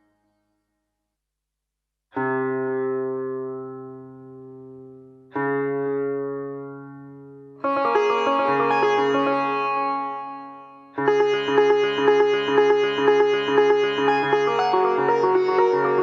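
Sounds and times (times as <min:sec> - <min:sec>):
plucked sitar notes: 0:07.6 - 0:16.0.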